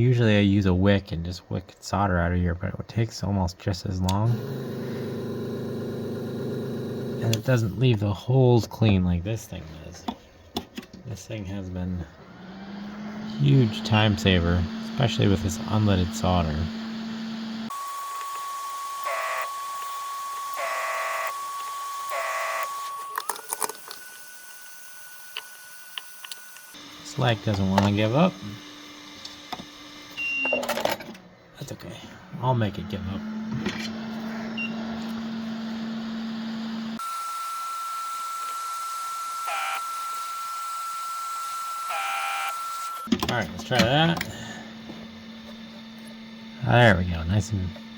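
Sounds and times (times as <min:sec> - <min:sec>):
vacuum pump humming: 0:04.1 - 0:08.2, 0:12.0 - 0:30.4, 0:32.5 - 0:47.9.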